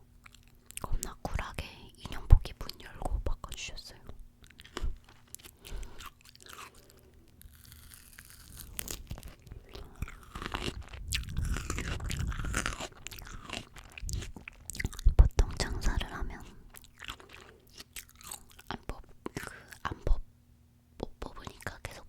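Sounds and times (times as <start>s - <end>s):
fruit being bitten and chewed: 0.1s - 1.2s, 4.4s - 20.2s.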